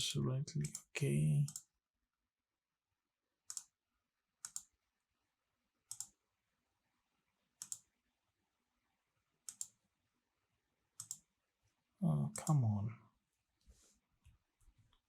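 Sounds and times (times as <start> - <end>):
computer mouse clicking: 0.6 - 0.9, 3.5 - 3.8, 4.4 - 4.8, 5.9 - 6.2, 7.6 - 7.9, 9.4 - 9.8, 11.0 - 11.3.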